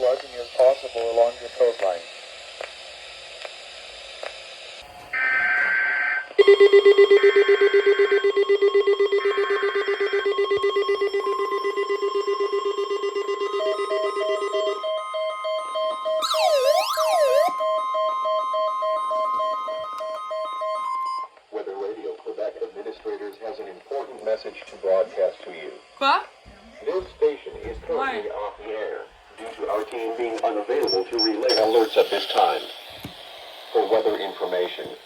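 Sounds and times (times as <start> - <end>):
steady weather radio warning tone: 0.0 - 2.7, 4.8 - 20.3, 21.2 - 35.0
fast pulsing buzzing alarm: 4.7 - 20.7, 31.3 - 35.0
screeching data tones: 5.1 - 21.3, 30.7 - 35.0
siren-like warble: 5.1 - 21.3
repeating beeps: 16.2 - 17.5, 30.9 - 32.3.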